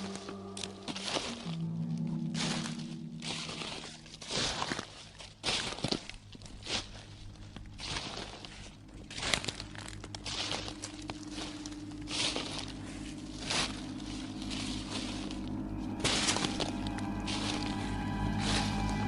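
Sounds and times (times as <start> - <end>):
low drone with held tones: 0.0 - 19.0
hissing scraping noise swells: 8.0 - 19.0.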